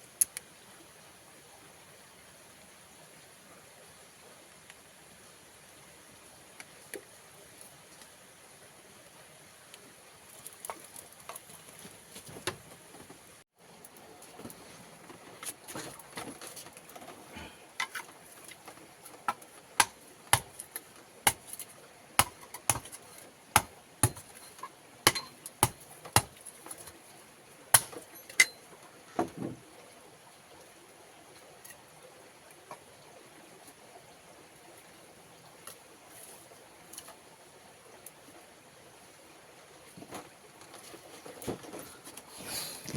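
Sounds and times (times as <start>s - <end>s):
sharp chopping knocks: 19.8s - 20.5s, 22.2s - 22.9s, 23.6s - 24.3s, 25.1s - 26.4s.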